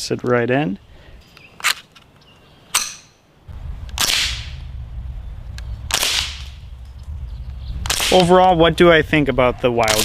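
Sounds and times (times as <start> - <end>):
low rumble: 3.5 - 9.7
rifle shot: 3.9 - 4.7, 5.9 - 6.8, 7.8 - 8.4.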